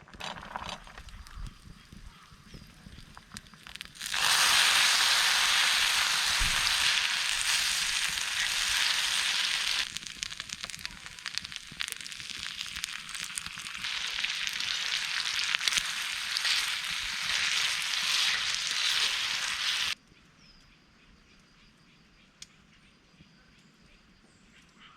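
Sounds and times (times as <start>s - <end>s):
food sizzling in a hot pan: 2.9s - 20.0s.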